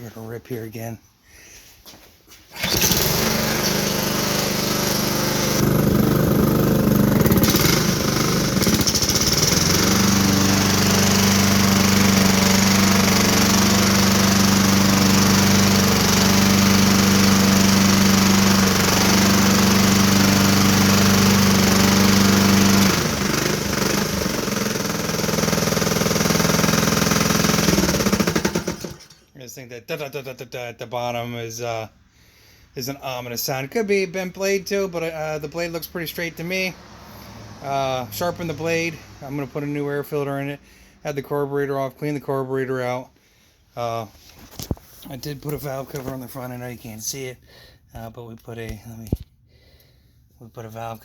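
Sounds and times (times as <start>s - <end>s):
lawn mower engine running: 2.5s - 29.2s
engine knocking: 7.2s - 10.4s, 21.7s - 29.1s.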